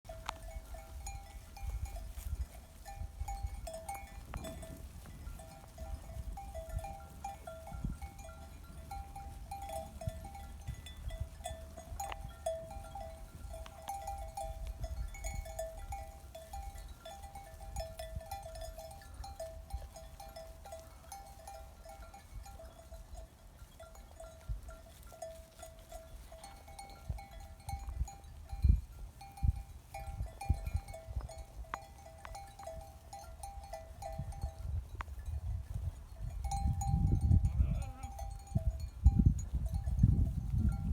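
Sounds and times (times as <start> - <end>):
sheep and lambs calling: 37.5 - 38.4.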